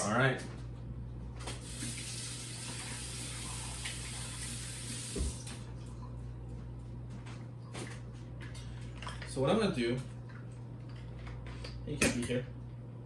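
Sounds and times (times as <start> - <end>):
water running from tap into sink: 1.5 - 5.6.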